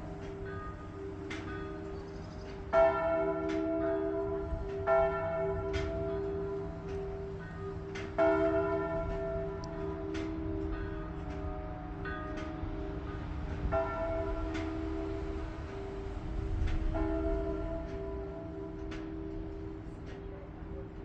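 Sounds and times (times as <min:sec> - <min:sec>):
church bells ringing: 0:00.0 - 0:21.0.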